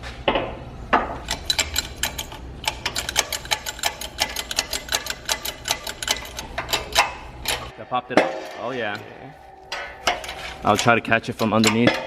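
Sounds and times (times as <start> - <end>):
shop press humming: 0.3 - 12.0
rapid irregular clicking: 1.2 - 7.8, 9.7 - 12.0.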